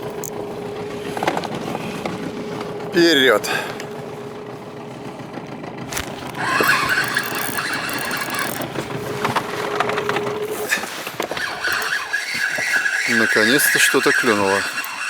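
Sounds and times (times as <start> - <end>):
boat motor running: 0.0 - 15.0
fishing reel squealing: 6.4 - 8.7, 10.6 - 15.0.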